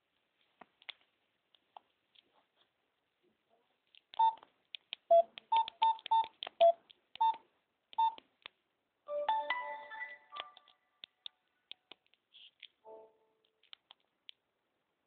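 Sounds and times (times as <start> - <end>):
phone electronic beeps: 4.2 - 4.4, 5.1 - 7.4, 8.0 - 8.2.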